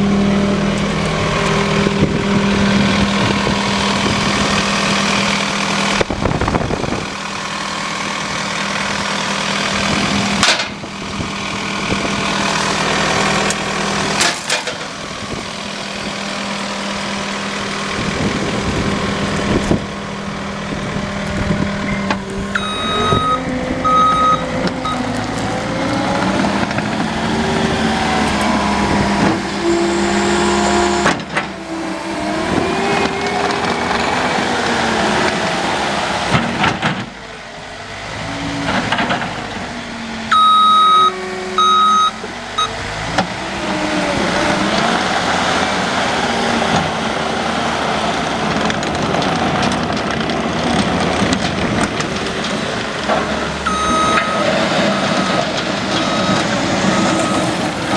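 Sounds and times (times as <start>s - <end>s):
track loader diesel engine: 0.0s - 57.9s
reversing alarm beeps: 22.6s - 25.1s, 40.3s - 42.8s, 53.7s - 55.4s, 56.0s - 57.6s.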